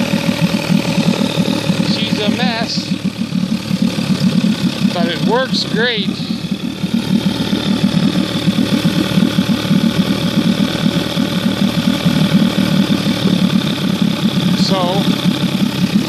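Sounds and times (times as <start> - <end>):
outboard motor idling: 0.0 - 16.0.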